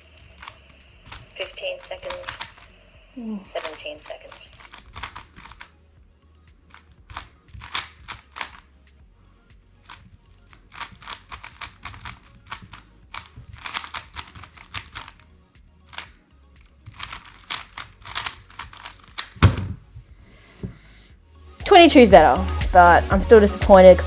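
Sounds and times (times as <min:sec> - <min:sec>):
speed cube plastic clicking: 0:00.1 - 0:02.7, 0:03.6 - 0:05.8, 0:06.7 - 0:08.7, 0:09.8 - 0:19.6.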